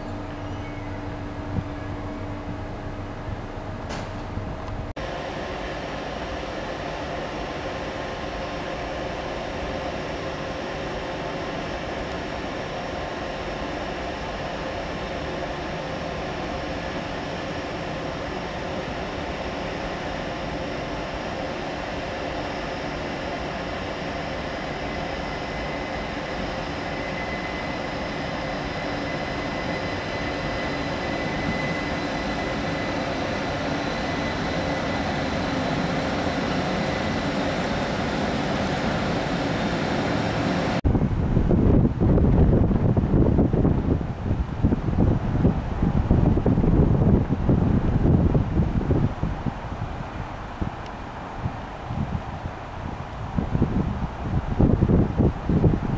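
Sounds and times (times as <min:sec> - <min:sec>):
train rumbling with whine: 0:00.0 - 0:55.9
wind buffeting microphone: 0:00.9 - 0:04.9, 0:30.0 - 0:55.9.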